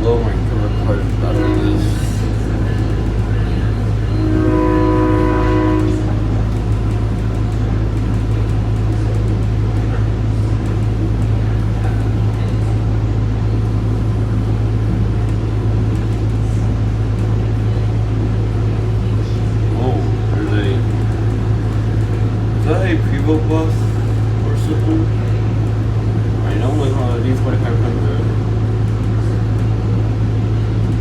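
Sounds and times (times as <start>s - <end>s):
train rumbling: 0.0s - 31.0s
train horn: 1.2s - 2.3s, 4.0s - 6.8s.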